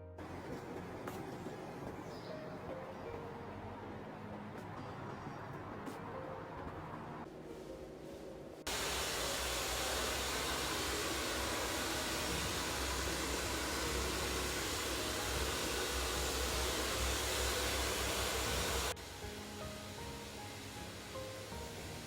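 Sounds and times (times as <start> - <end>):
hair dryer running: 8.7 - 22.0.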